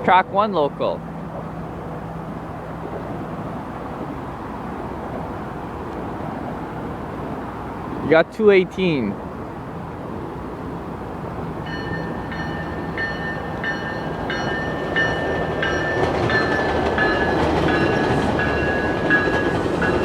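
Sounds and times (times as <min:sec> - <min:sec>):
train rumble: 0:00.0 - 0:08.2, 0:08.8 - 0:20.0
locomotive bell ringing: 0:11.6 - 0:20.0.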